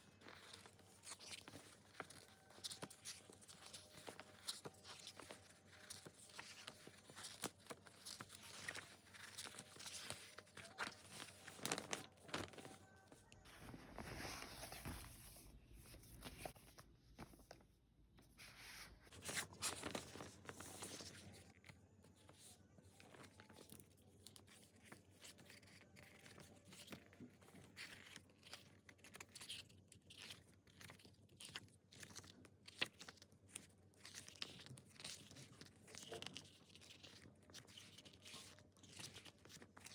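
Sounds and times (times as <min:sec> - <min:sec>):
packaging crinkling and tearing: 0:00.1 - 0:15.0.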